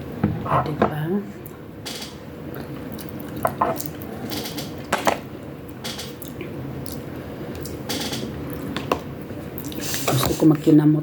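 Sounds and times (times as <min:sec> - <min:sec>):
person chewing food: 0:02.5 - 0:04.4, 0:05.7 - 0:07.8, 0:09.5 - 0:09.9.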